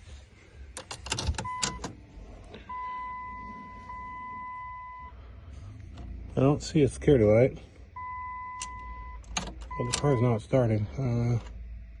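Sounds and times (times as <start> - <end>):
electronic warning tone: 2.7 - 5.2.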